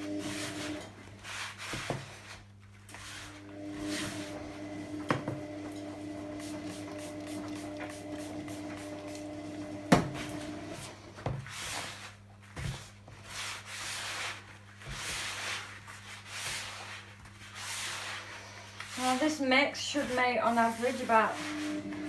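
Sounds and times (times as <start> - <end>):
hands rubbing gritty powder: 13.3 - 21.2.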